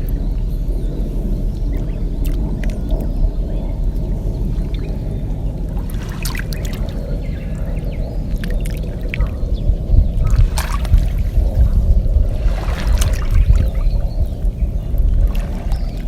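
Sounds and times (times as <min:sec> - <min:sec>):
steady low rumble: 0:00.0 - 0:16.0
water splashing off paddle: 0:12.4 - 0:14.0.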